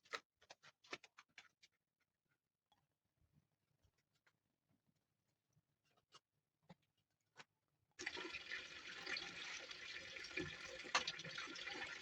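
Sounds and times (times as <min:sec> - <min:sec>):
water pouring: 0:08.0 - 0:12.0.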